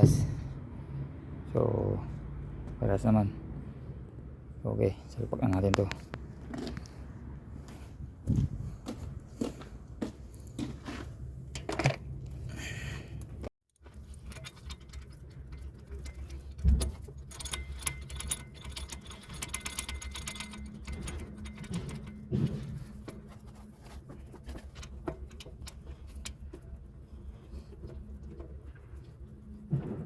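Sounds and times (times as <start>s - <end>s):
metal clunks and knocks: 13.8s - 26.8s, 27.7s - 30.0s
ratchet wrench clicking: 14.0s - 22.1s.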